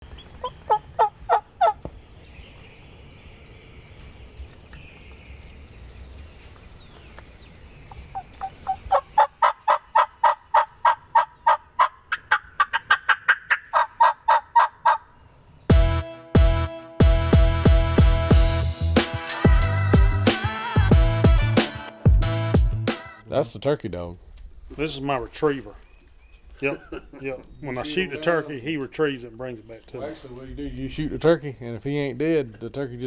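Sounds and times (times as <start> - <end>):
turkey calling: 0.0 - 2.1, 7.9 - 15.2
music with a beat: 15.7 - 23.2.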